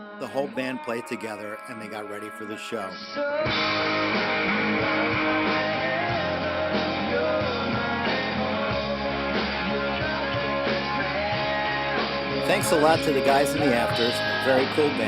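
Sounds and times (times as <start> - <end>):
person singing: 0.0 - 3.6, 4.5 - 15.0
rock band playing: 3.3 - 15.0.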